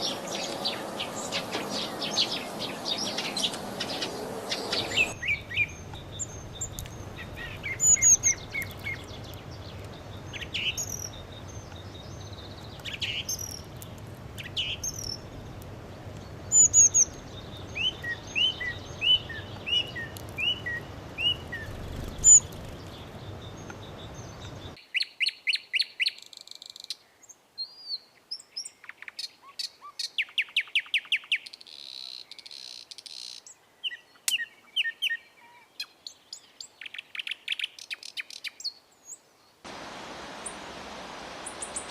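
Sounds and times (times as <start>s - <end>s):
sparrows chirping: 0.0s - 26.3s.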